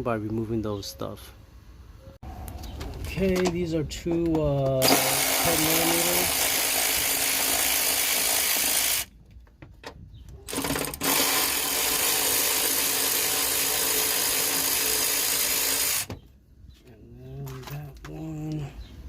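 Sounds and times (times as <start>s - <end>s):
impact wrench running: 4.8s - 9.1s, 10.5s - 16.1s.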